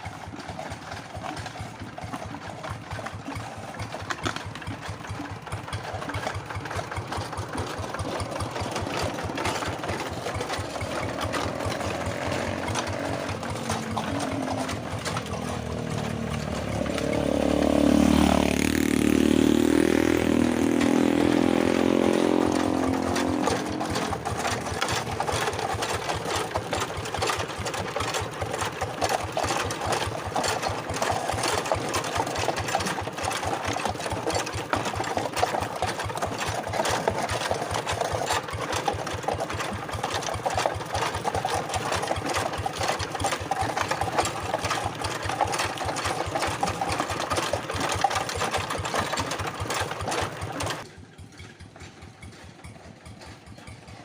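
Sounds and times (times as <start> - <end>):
diesel engine chugging: 0.0 - 54.0
deeper engine note: 10.8 - 25.3.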